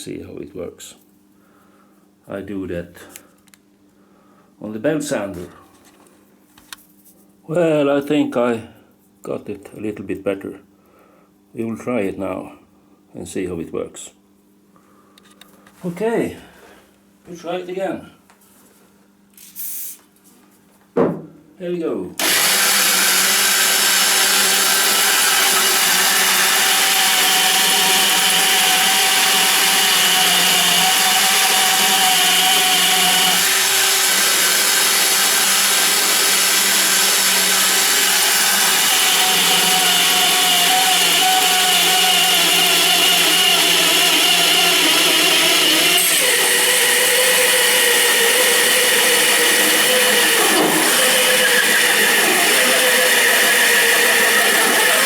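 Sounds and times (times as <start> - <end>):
hole saw drilling with whine: 22.2 - 55.0.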